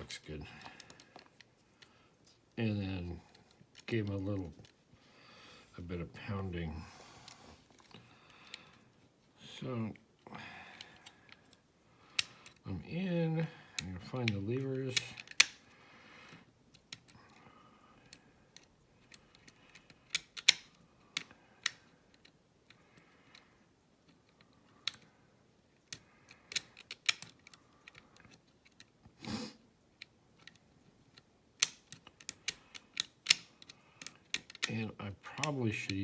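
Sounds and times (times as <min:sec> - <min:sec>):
small metallic clicks of lock: 0:12.2 - 0:12.6, 0:15.0 - 0:15.8, 0:16.7 - 0:17.4, 0:18.0 - 0:25.1, 0:25.8 - 0:29.0, 0:30.0 - 0:34.8.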